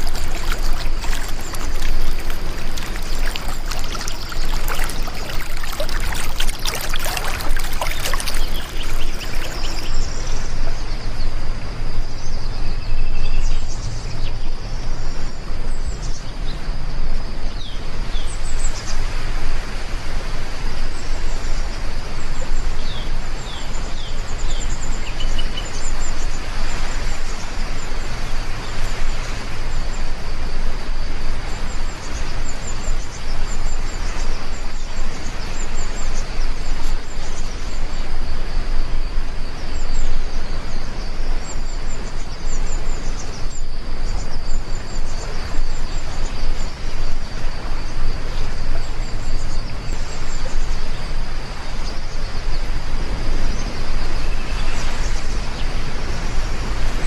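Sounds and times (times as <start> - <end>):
birds chirping: 0.0 - 9.9
water dripping and splashing: 0.0 - 9.9.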